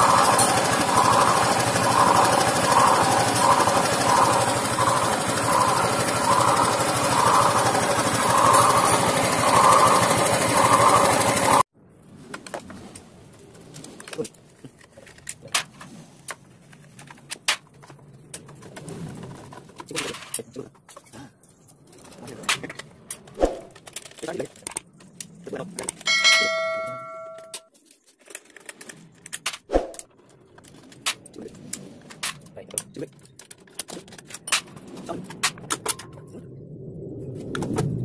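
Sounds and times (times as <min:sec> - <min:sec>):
scooter engine running rough: 0:00.0 - 0:11.6.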